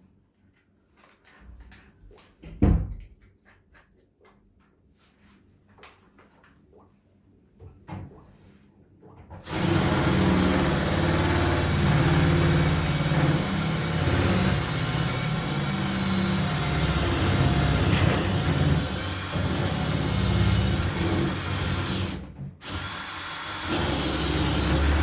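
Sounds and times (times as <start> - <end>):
electric drill boring into metal: 9.5 - 25.0.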